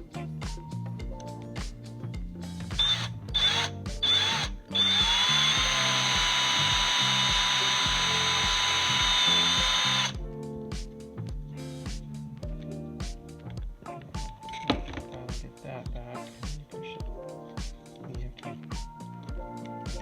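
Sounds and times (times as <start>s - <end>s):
electric drill whirring: 2.8s - 10.2s.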